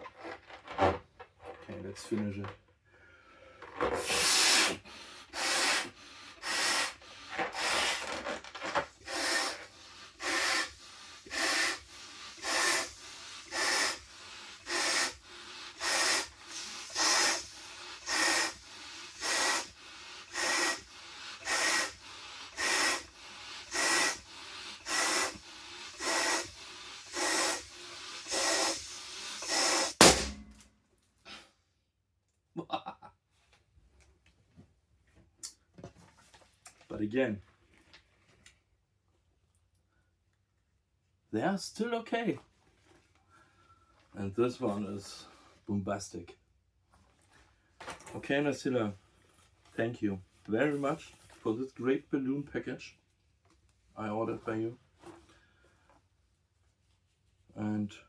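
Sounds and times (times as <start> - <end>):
breaths blowing up balloon: 3.1 - 30.6
balloon bursting: 5.4 - 6.9, 7.5 - 8.1, 9.0 - 22.0, 22.6 - 30.6.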